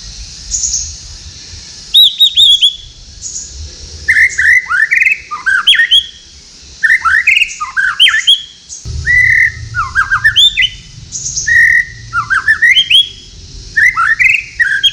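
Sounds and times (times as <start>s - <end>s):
bird singing whistled phrases: 1.9s - 2.8s.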